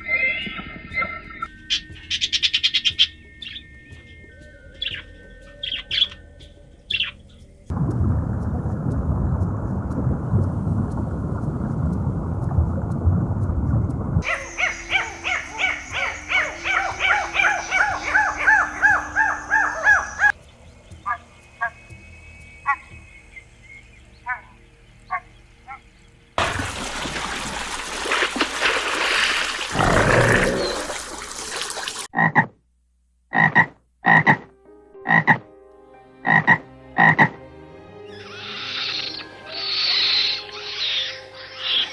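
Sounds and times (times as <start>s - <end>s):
repeated pitched animal call: 14.2s - 20.3s, 22.6s - 23.0s, 24.3s - 25.8s, 33.3s - 34.5s, 35.1s - 35.5s
dense low animal chorus: 14.2s - 21.9s, 22.6s - 26.0s, 29.7s - 31.1s.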